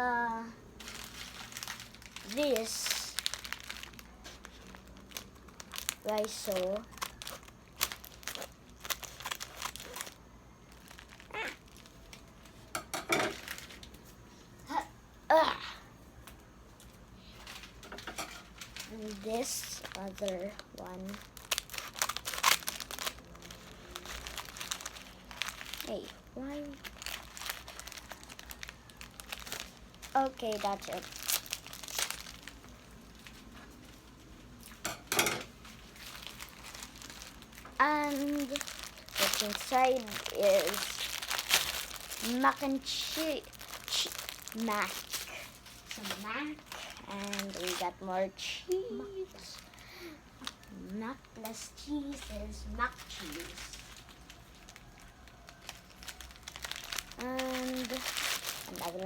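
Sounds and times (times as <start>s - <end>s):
child vocal sounds: 0.0s - 0.6s, 14.7s - 16.0s, 37.8s - 41.1s, 42.2s - 53.8s, 57.2s - 59.0s
plastic packet crinkling: 0.7s - 14.0s, 16.8s - 59.0s
dishes and utensils clinking: 34.9s - 35.5s.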